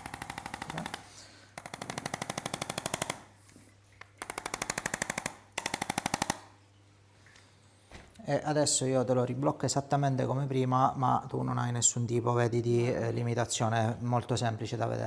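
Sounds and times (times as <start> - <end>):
massage gun running: 0.0 - 3.3.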